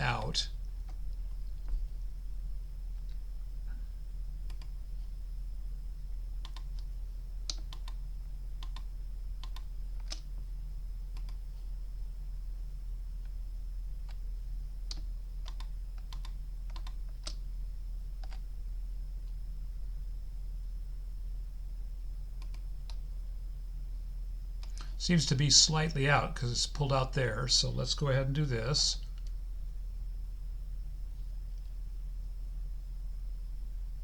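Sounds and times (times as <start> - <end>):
low electrical hum: 0.0 - 34.0
computer keyboard clicks: 4.4 - 4.7, 6.4 - 8.0, 8.6 - 10.3, 11.1 - 11.4, 14.9 - 17.4, 22.4 - 23.0
mouse clicks: 11.1 - 11.4.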